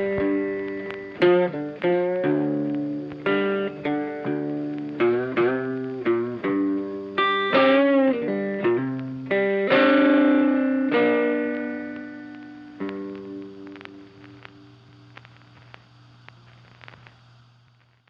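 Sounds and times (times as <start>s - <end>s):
funky electric guitar music: 0.0s - 14.7s.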